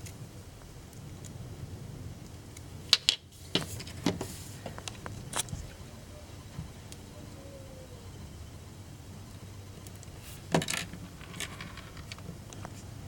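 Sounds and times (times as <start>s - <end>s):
small metal parts clicking: 9.9s - 12.7s.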